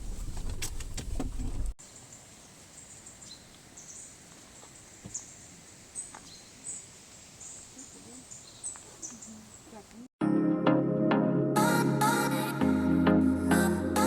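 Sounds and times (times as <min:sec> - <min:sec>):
soft steady hiss: 0:01.2 - 0:10.1.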